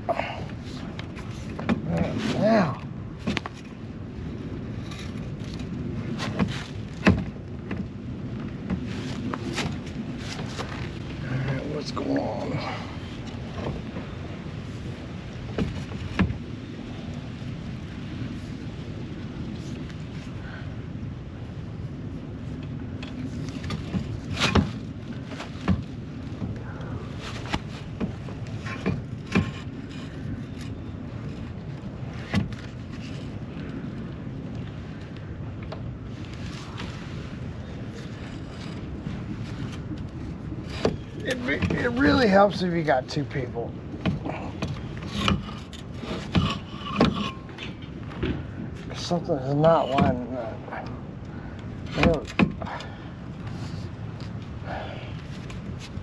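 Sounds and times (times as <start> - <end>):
steady low hum: 0.0 - 56.0
motor knocks and clunks: 44.0 - 48.6.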